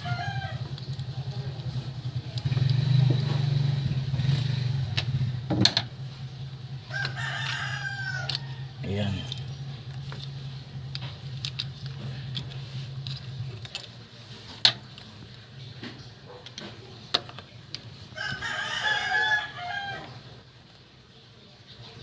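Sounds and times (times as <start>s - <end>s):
rooster crowing: 0.0s - 0.7s, 6.8s - 8.8s, 18.1s - 20.4s
low steady hum: 0.0s - 22.0s.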